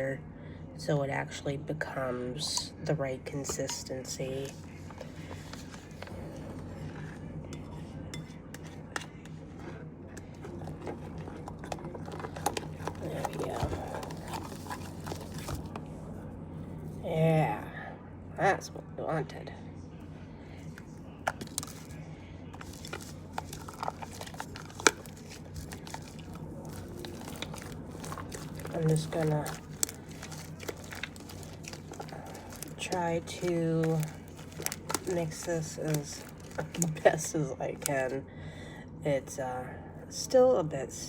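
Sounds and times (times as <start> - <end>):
slime stirred sticky crackling: 3.6 - 15.7, 22.6 - 37.2.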